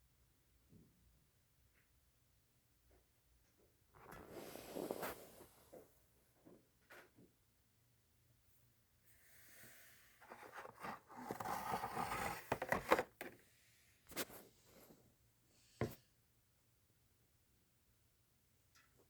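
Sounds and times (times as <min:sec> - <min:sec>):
handling rustling and scraping: 0:04.0 - 0:05.9, 0:09.9 - 0:13.4, 0:14.1 - 0:15.1.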